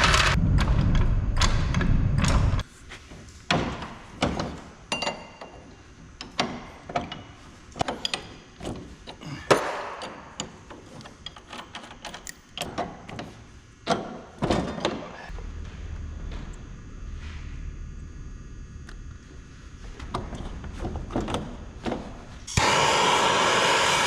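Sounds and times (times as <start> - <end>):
steady low hum: 0.0 - 24.0
tools and metal parts clanking: 3.5 - 15.2.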